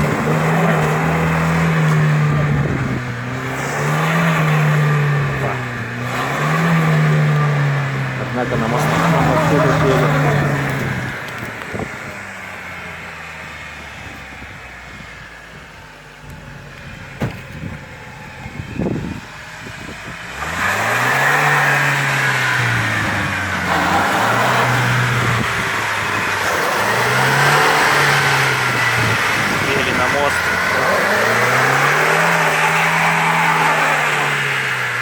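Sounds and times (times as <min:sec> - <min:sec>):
car engine revving: 0:00.0 - 0:35.0
engine knocks: 0:15.5 - 0:20.2.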